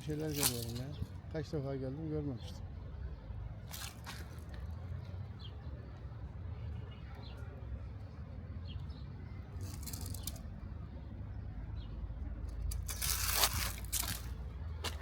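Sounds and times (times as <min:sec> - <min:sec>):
scraping rustling noise: 0:00.0 - 0:01.1, 0:03.7 - 0:04.6, 0:09.6 - 0:10.5, 0:12.7 - 0:15.0.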